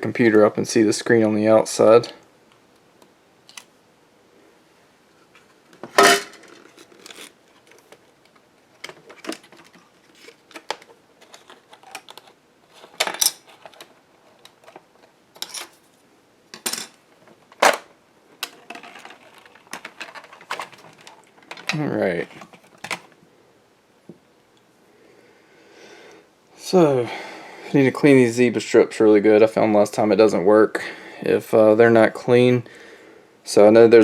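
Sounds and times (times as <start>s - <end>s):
plastic parts clicking and knocking: 5.7s - 15.8s, 16.6s - 23.1s.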